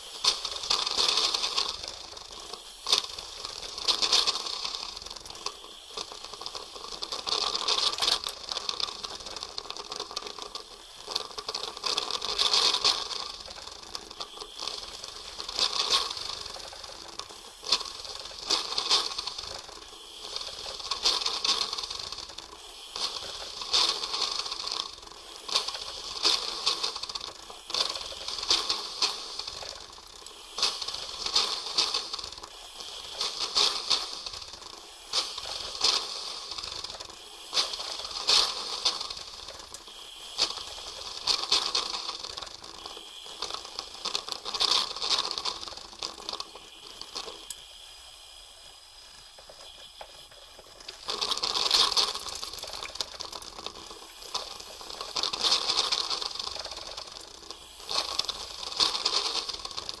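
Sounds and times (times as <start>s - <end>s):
coffee machine hissing and sputtering: 0.0s - 60.0s.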